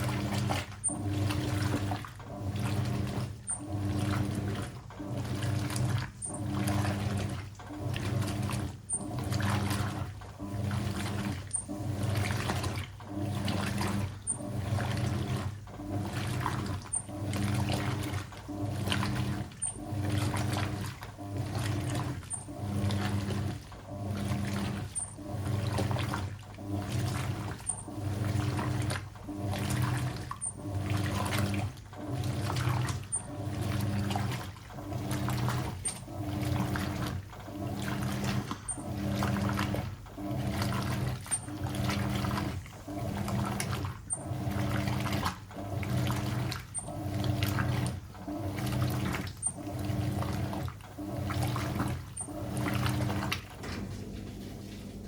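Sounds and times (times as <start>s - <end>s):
washing machine motor hum: 0.0s - 55.0s
water sloshing: 0.0s - 55.0s.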